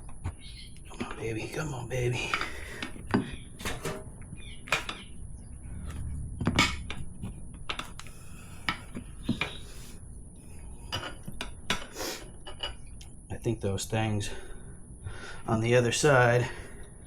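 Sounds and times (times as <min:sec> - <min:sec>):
tire irons clinking on wheel rim: 0:02.2 - 0:09.9.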